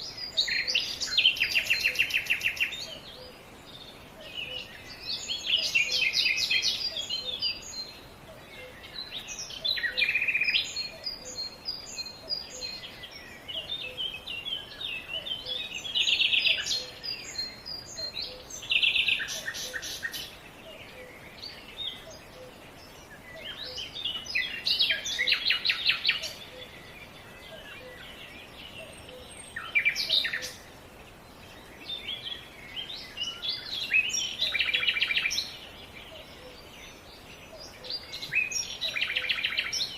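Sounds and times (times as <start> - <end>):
outdoor background hiss: 0.0 - 39.9
songbirds chirping and trilling: 0.0 - 39.9.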